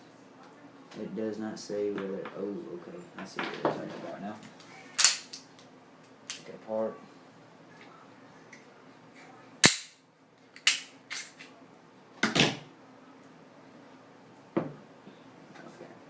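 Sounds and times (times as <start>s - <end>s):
pistol metal clicks: 10.6s - 11.4s.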